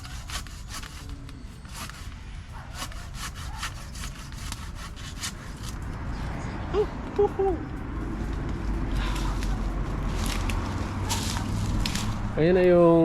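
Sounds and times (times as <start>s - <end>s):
hand saw cutting branch: 0.0s - 5.8s.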